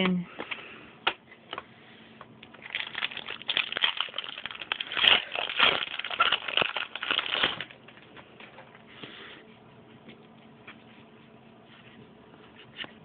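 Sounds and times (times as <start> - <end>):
foil wrapper crinkling and tearing: 2.5 - 7.9.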